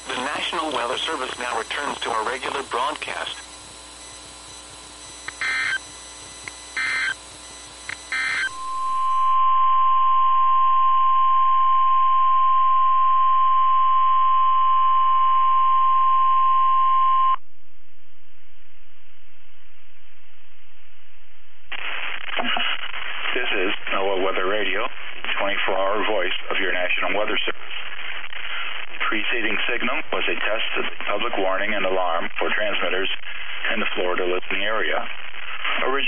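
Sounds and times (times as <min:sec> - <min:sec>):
faint radio hiss: 0:00.0 - 0:09.5, 0:18.6 - 0:36.0
steady alarm tone: 0:05.1 - 0:06.1, 0:06.7 - 0:09.4.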